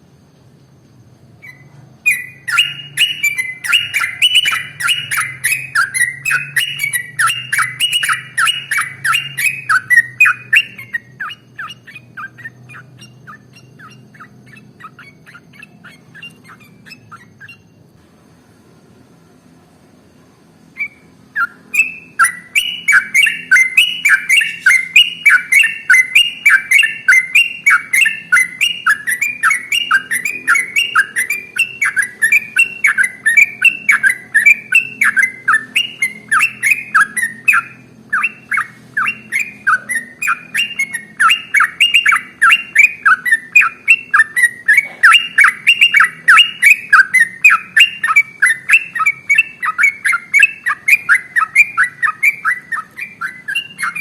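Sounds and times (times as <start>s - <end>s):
bird singing rapid bubbling notes: 1.4s - 17.7s, 20.8s - 54.0s.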